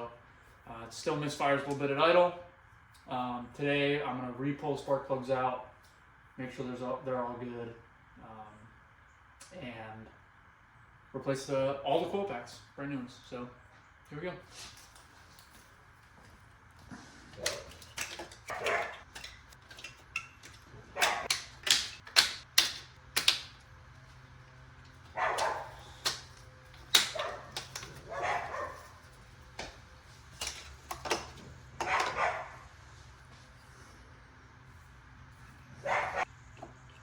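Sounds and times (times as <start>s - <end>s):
dog barking: 18.5s - 19.0s, 21.0s - 21.3s, 25.1s - 26.0s, 27.0s - 29.0s, 31.8s - 32.7s, 35.8s - 36.3s.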